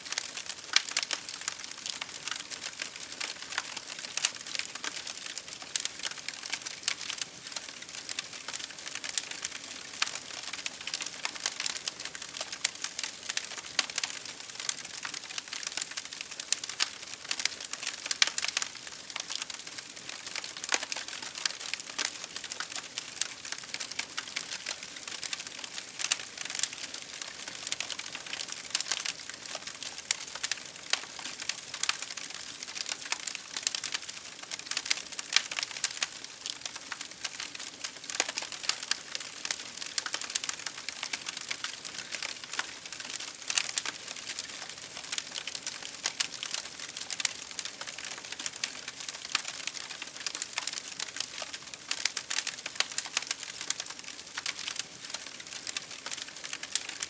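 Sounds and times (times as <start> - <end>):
fire crackling: 0.1 - 57.0.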